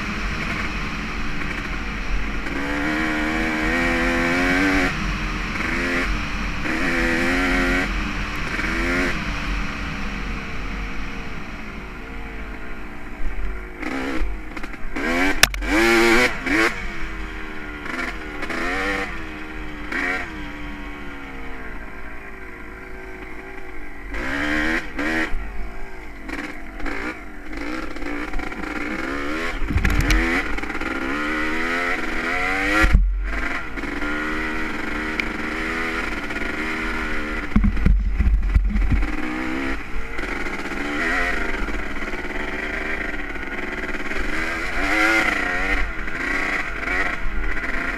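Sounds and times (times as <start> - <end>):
motocross engine revving: 0.0 - 12.5, 13.5 - 47.9
low thumps: 29.6 - 30.4, 32.7 - 33.5, 37.5 - 39.2.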